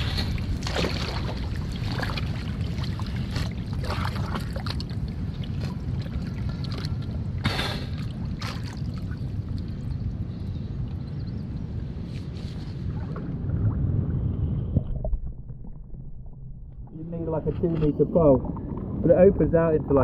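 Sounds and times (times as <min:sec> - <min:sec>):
water sloshing in rock pool: 0:00.0 - 0:09.8
steady low rumble: 0:00.0 - 0:20.0.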